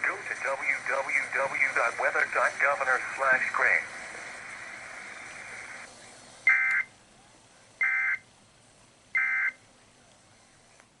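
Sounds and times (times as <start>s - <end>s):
radio static hiss: 0.0s - 6.9s.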